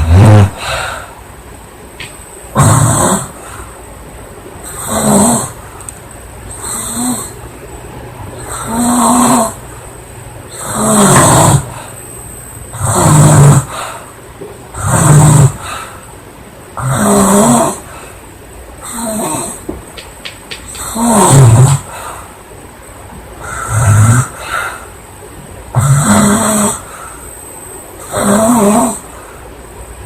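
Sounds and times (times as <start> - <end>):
woman snoring: 0.0 - 1.0, 4.7 - 5.6, 6.6 - 7.4, 8.4 - 9.6, 10.5 - 11.9, 12.7 - 13.9, 14.8 - 15.8, 16.8 - 17.9, 18.8 - 19.6, 20.8 - 21.9, 23.6 - 24.5, 25.8 - 26.9, 28.1 - 29.0.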